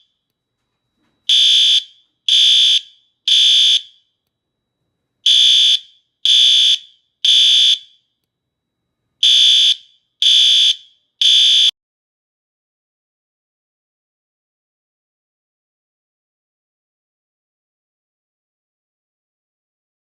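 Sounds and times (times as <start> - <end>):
fire alarm horn blasts: 1.3 - 4.2, 5.3 - 8.1, 9.2 - 11.8.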